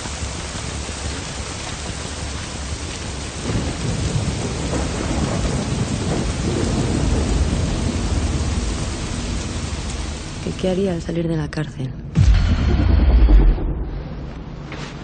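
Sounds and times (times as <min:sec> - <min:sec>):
rolling thunder rumble: 0:00.0 - 0:11.1, 0:12.1 - 0:14.5
heavy rain: 0:00.0 - 0:11.5.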